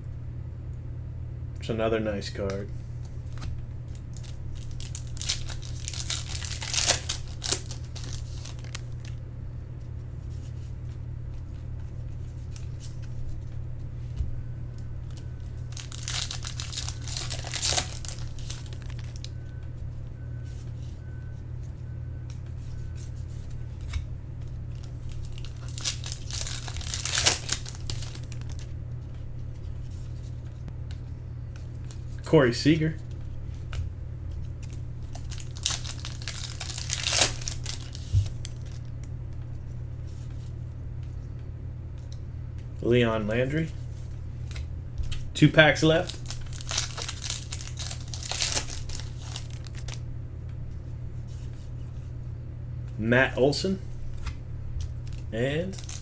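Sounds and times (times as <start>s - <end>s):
steady low hum: 0.0s - 56.0s
foil wrappers tearing and crinkling: 3.9s - 9.2s, 15.6s - 19.3s, 24.8s - 28.7s, 34.6s - 38.9s, 45.8s - 50.0s, 55.0s - 56.0s.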